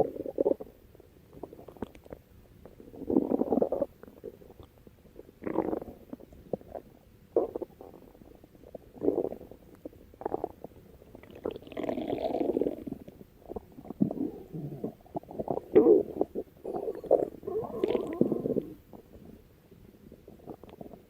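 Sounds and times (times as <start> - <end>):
stomach growling: 0.0 - 19.4, 20.0 - 21.0.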